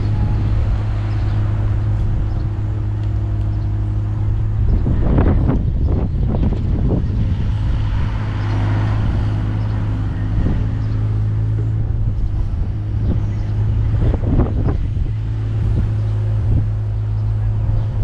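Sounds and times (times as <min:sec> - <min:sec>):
excavator diesel engine running: 0:00.0 - 0:18.0.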